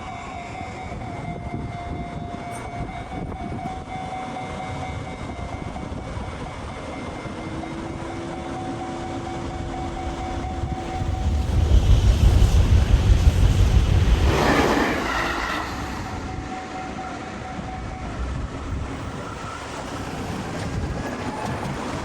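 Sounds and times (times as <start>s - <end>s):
steady high tone: 0.0s - 11.8s, 14.2s - 19.6s
train rumbling past: 7.8s - 22.0s.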